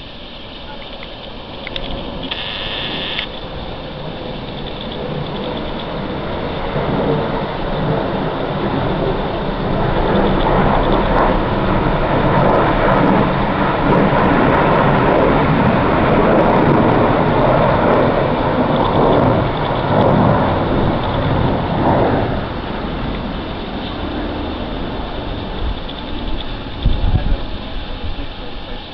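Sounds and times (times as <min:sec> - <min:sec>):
military aircraft engines rumbling: 0:00.0 - 0:28.9.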